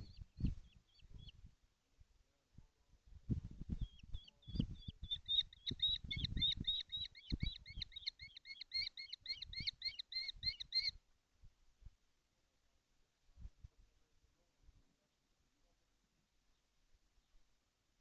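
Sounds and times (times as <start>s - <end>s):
kestrel calling: 4.2s - 10.9s.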